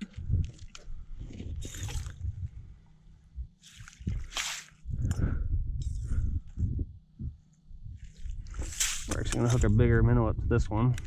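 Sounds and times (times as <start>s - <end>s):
wind buffeting microphone: 0.0s - 11.0s
slushy water sloshing: 3.6s - 4.8s.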